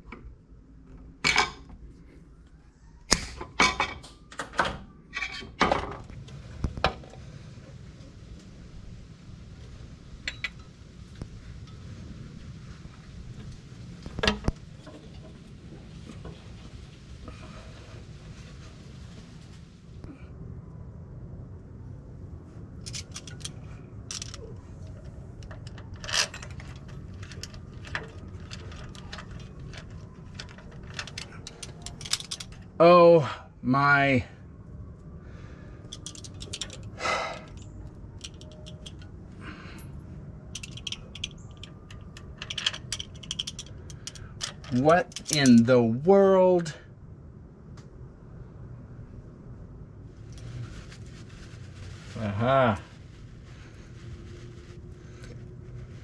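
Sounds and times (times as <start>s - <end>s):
metal hand tools clicking and scraping: 22.8s - 32.7s, 35.9s - 39.2s, 40.6s - 45.7s.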